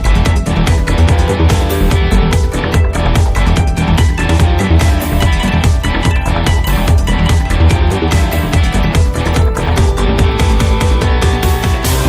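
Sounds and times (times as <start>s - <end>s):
electronic beat: 0.0s - 12.0s
guitar: 0.0s - 12.0s.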